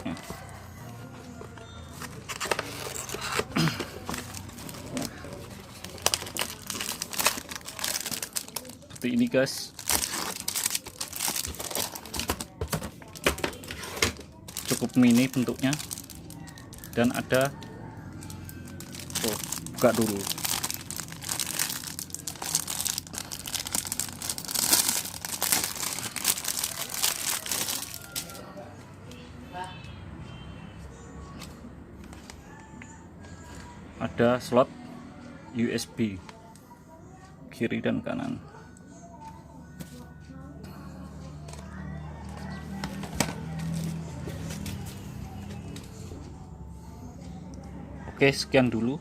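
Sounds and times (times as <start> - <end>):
plastic packaging crinkling: 2.2 - 17.6, 18.6 - 28.4.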